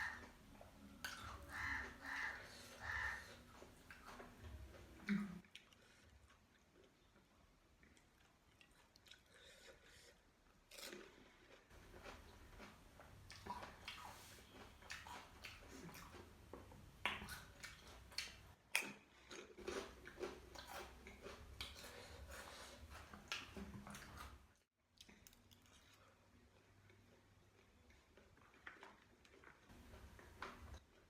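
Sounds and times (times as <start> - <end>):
person chewing crunchy food: 7.8 - 24.4.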